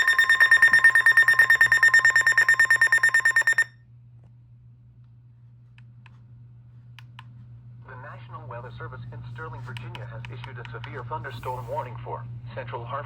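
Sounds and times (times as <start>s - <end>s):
pulsing electronic alarm beep: 0.0s - 3.7s
faint steady hum: 0.0s - 13.0s.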